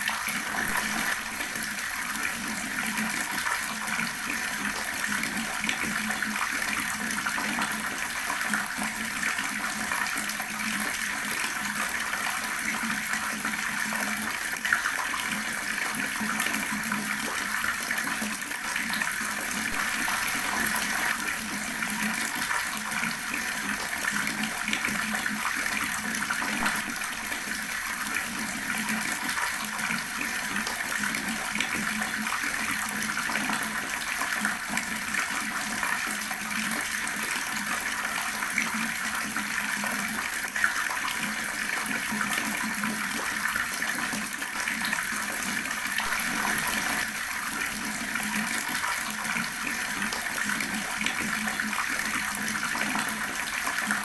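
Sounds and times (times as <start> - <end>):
tap water splashing: 15.9 - 31.8.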